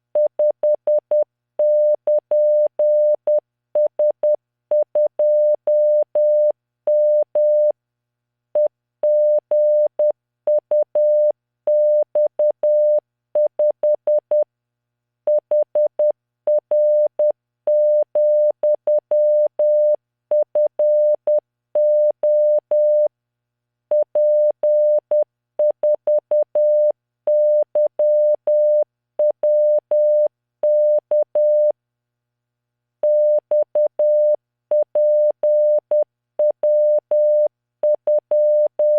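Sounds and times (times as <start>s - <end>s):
morse code tone: 36.6s - 38.9s.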